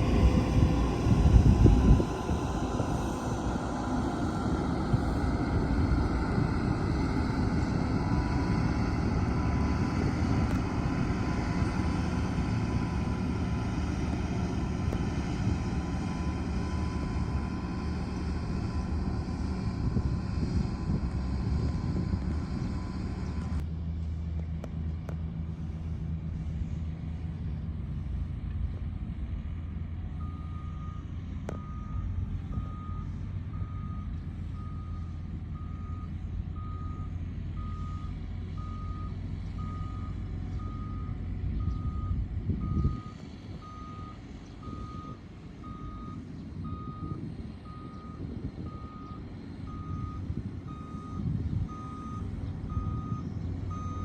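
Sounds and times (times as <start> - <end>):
heavy diesel engine rumble: 0.0 - 54.0
reversing alarm beeping: 30.2 - 54.0.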